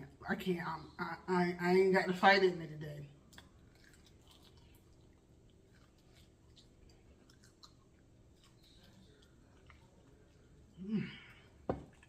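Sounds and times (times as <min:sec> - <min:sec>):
faint chewing and mouth clicks: 0:03.2 - 0:12.0.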